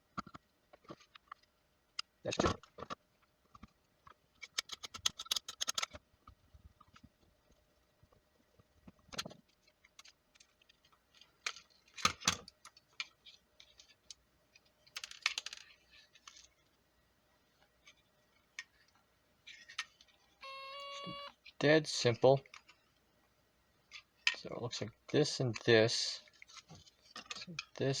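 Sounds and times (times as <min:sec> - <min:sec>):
plastic parts clicking and rattling: 0:00.2 - 0:06.0, 0:08.8 - 0:16.6, 0:26.3 - 0:27.9.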